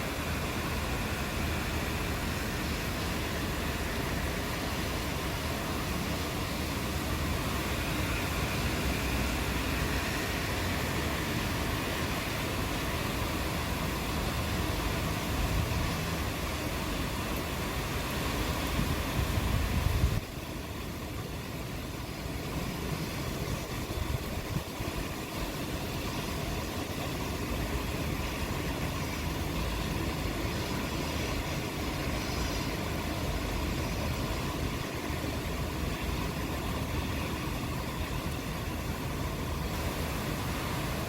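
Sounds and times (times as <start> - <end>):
steady rain hiss: 0.0 - 41.0.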